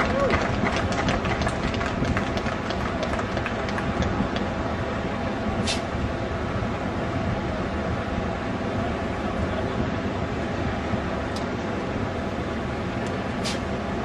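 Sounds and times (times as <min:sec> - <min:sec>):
vehicle rumble: 0:00.0 - 0:14.0
short high hiss: 0:05.6 - 0:05.9, 0:13.4 - 0:13.7.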